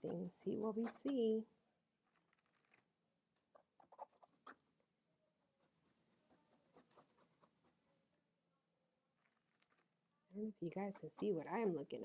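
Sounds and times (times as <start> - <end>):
paintbrush strokes on paper: 3.8 - 8.1, 10.6 - 12.0.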